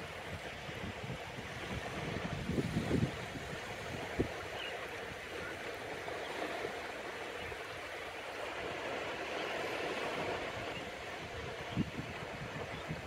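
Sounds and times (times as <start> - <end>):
surf washing onto beach: 0.0 - 13.0
wind on microphone: 0.0 - 13.0.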